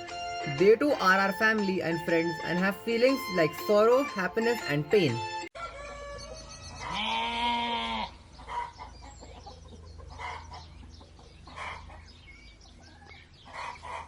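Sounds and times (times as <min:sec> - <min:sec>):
chickens clucking: 0:08.3 - 0:12.4, 0:13.4 - 0:14.0.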